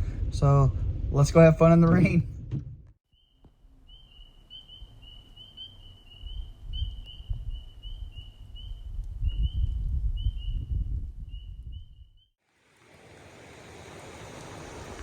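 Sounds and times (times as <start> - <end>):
low rumble: 0.0 - 3.0
short high peeping calls: 3.1 - 9.6.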